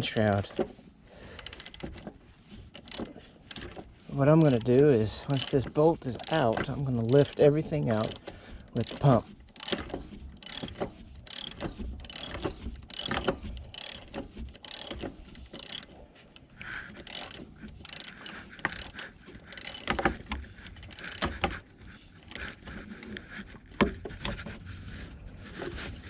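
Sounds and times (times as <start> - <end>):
ratchet wrench clicking: 1.3 - 2.1, 2.8 - 16.0, 16.9 - 21.5, 22.2 - 22.6.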